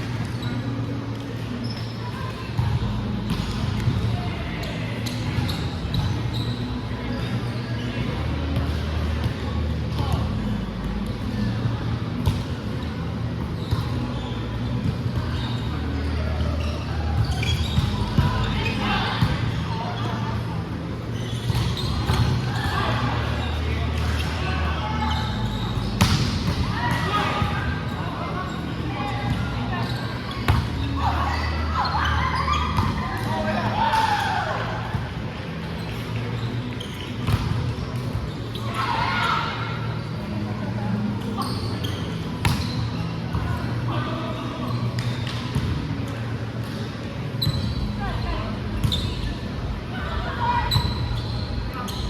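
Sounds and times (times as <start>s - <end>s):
large hall ambience: 0.0s - 52.0s
volleyball bouncing on gym floor: 26.0s - 27.8s, 42.4s - 42.8s.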